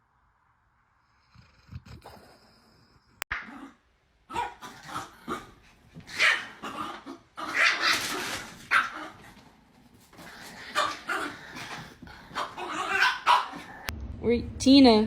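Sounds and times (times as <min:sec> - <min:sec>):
dog barking: 0:04.3 - 0:05.5, 0:06.1 - 0:06.8, 0:12.3 - 0:13.9.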